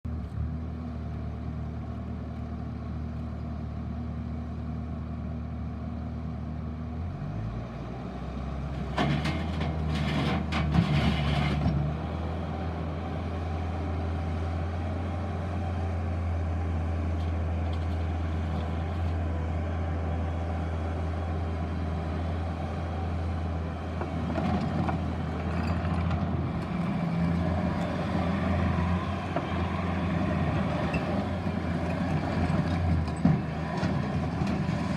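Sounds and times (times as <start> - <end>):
diesel engine running and revving: 0.0 - 34.9
uneven working noise: 8.8 - 11.9, 21.7 - 34.9.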